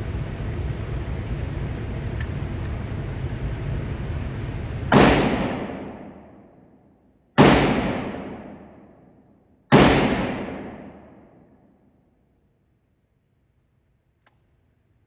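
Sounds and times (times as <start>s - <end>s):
gunshots: 4.9s - 6.4s, 7.4s - 8.9s, 9.7s - 11.4s.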